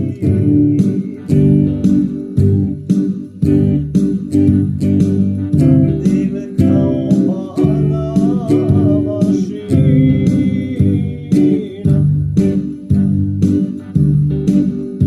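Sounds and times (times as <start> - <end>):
person singing: 0.0 - 2.6, 5.6 - 12.9
strummed guitar over beat: 0.0 - 15.0.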